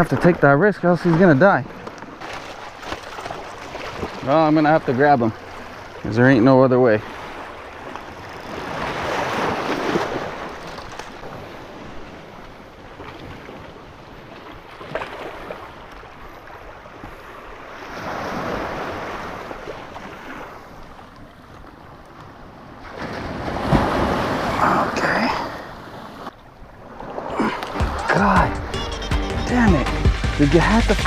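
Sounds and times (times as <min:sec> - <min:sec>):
ocean surf washing up beach: 0:00.0 - 0:28.5.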